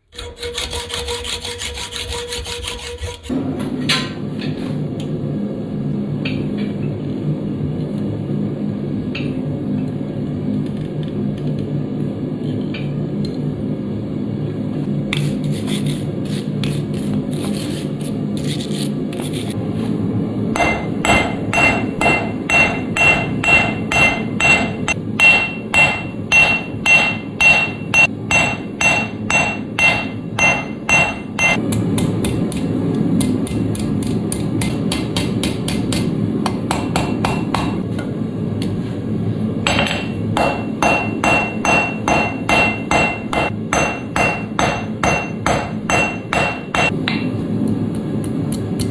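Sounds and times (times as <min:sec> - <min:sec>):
hammer striking steel on anvil: 0:20.6 - 0:38.1, 0:39.6 - 0:47.4.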